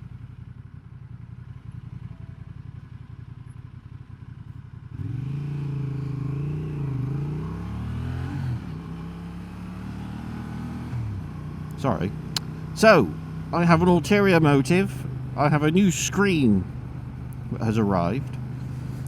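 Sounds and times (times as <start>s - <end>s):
motorcycle engine accelerating: 0.0s - 19.0s.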